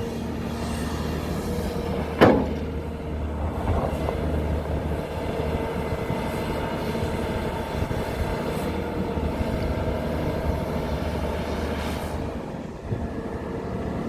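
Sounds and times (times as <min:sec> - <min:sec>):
heavy diesel machinery running: 0:00.0 - 0:14.0
loud metallic clank: 0:02.2 - 0:02.8.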